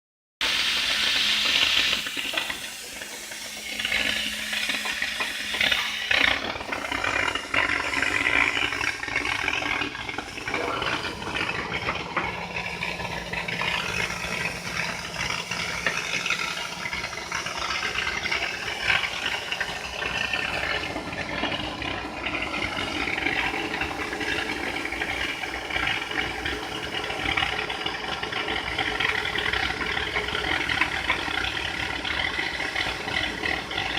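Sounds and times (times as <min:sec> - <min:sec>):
plasma cutter hissing: 0:00.4 - 0:27.6.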